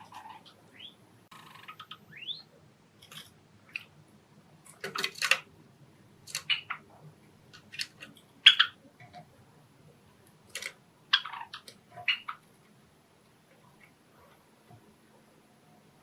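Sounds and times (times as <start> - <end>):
sparrows chirping: 0.0 - 2.5, 6.3 - 6.9, 8.4 - 8.8, 11.1 - 12.4
beak clicks: 6.3 - 6.8.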